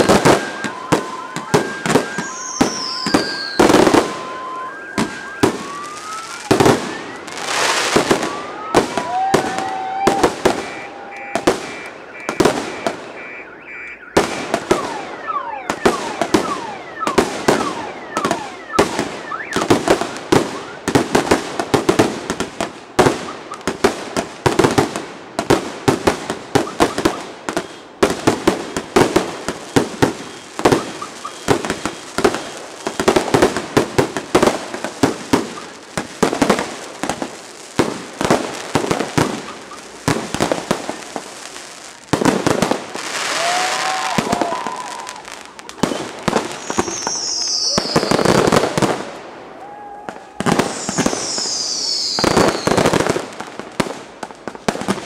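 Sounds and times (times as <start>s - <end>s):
whistling firework shells: 0.0s - 21.3s, 26.5s - 33.7s, 42.3s - 49.1s, 49.7s - 53.3s
fireworks bangs and crackles: 0.0s - 55.0s.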